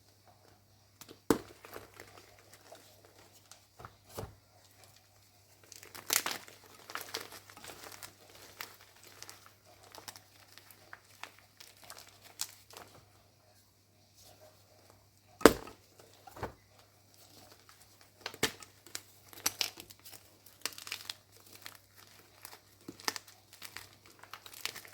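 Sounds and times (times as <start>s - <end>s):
chalk crunching and crumbling: 17.2s - 24.9s.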